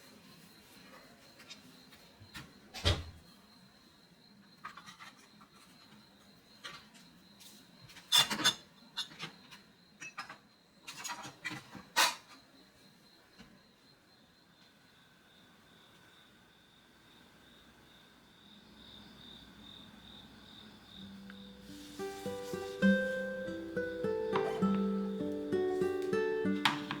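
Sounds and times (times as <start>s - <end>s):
containers knocking and clinking: 26.5s - 27.0s.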